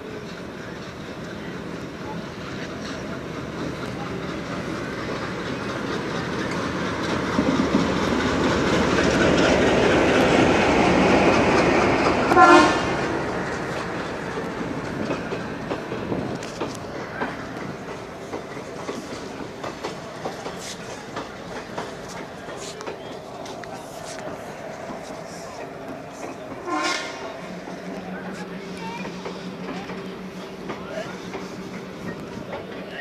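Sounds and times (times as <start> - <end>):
train passing: 0.0 - 33.0
train horn blast: 12.3 - 13.0, 26.6 - 27.2.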